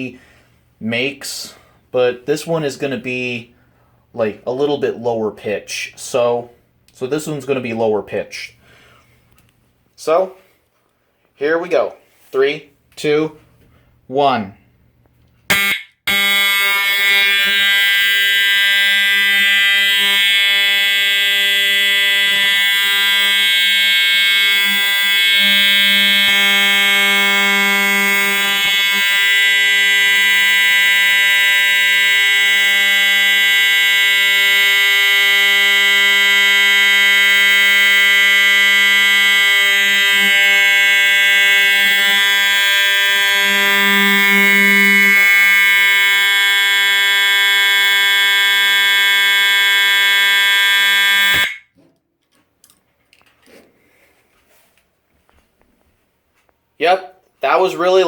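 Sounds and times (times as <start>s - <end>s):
low buzzing alarm horn: 15.5s - 51.7s.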